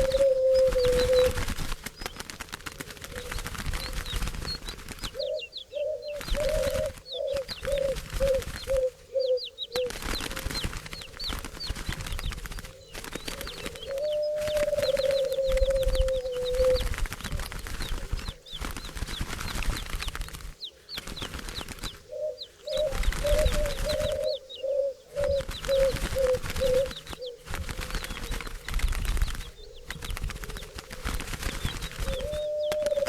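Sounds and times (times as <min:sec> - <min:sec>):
doves cooing: 0:00.0 - 0:33.0
fluttering wings: 0:00.0 - 0:33.0
small birds chirping: 0:00.0 - 0:33.0.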